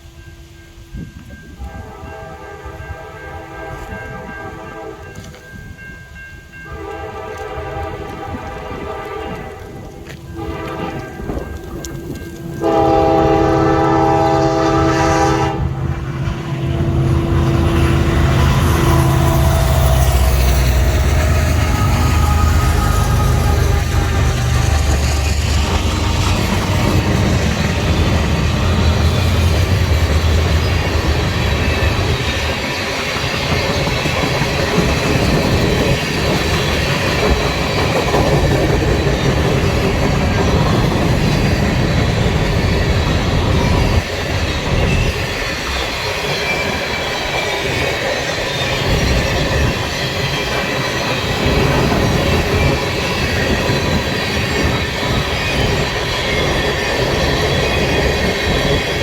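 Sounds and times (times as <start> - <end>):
train engine rumble: 0.0 - 59.0
train wheels clattering over track: 7.3 - 59.0
wheel squeal: 40.4 - 59.0.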